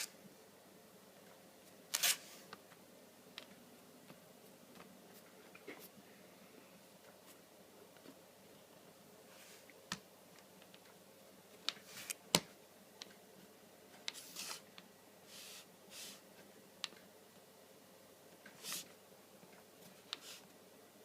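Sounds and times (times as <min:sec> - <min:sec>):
laptop clicks and crackling hisses: 0:18.4 - 0:19.0.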